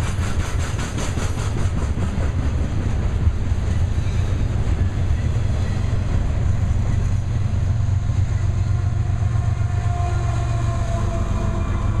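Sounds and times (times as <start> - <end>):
freight train rumbling past: 0.0 - 12.0.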